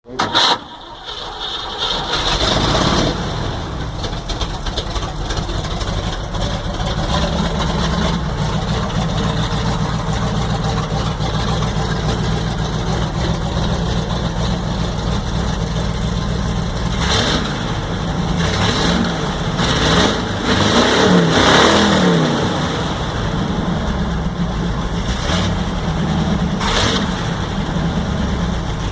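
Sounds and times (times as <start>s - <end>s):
car engine idling and revving: 0.8s - 28.9s.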